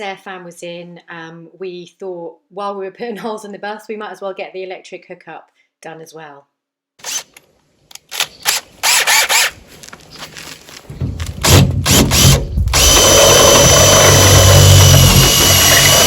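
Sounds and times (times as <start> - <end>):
power drill boring through metal: 8.5 - 9.6, 11.4 - 16.0.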